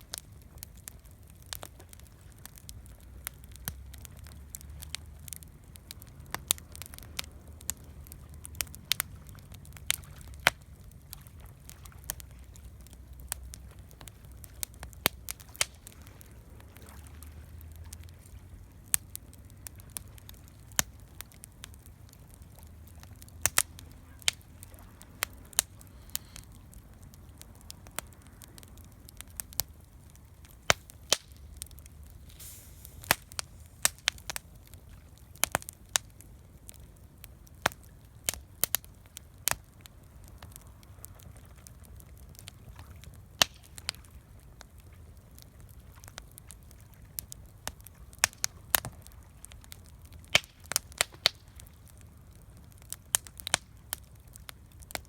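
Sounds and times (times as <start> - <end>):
low steady rumble: 0.0 - 43.4
campfire crackling and popping: 0.0 - 55.0.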